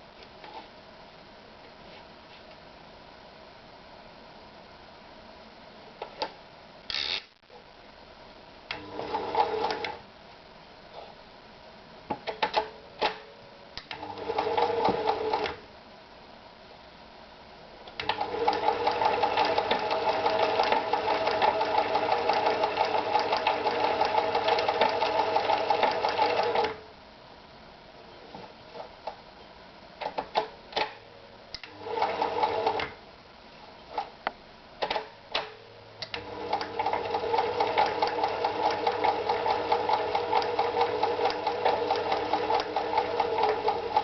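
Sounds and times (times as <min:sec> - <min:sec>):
sewing machine stitching: 0:18.0 - 0:26.8, 0:36.2 - 0:44.0
sewing machine clicks: 0:34.8 - 0:44.0.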